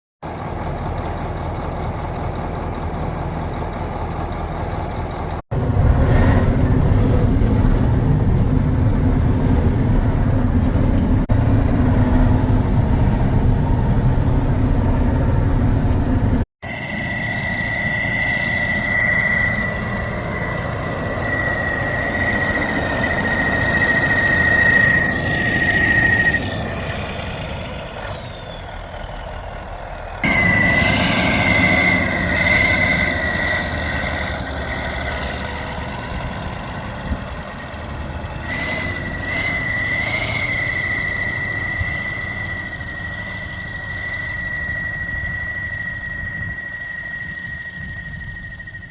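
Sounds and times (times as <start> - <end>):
tractor engine rumble: 0.2 - 48.9
high steady whistle: 16.6 - 36.6, 38.2 - 48.9.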